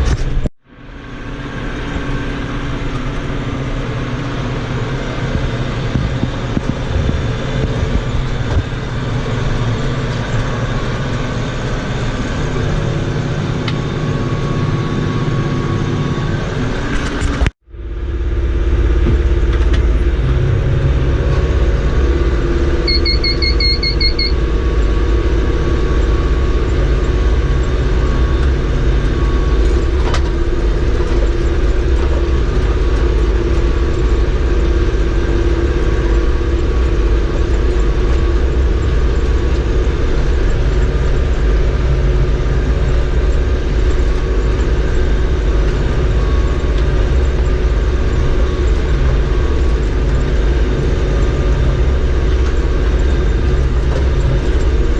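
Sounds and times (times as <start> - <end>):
tractor engine rumbling: 0.0 - 54.9
high beeps: 22.7 - 24.4.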